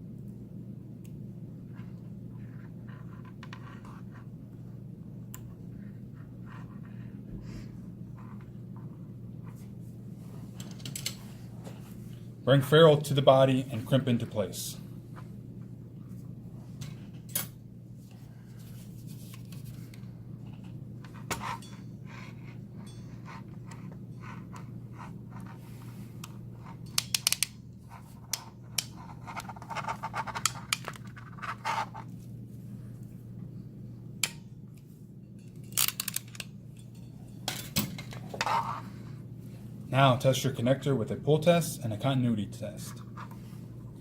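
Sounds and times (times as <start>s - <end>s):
steady low hum: 0.0s - 44.0s.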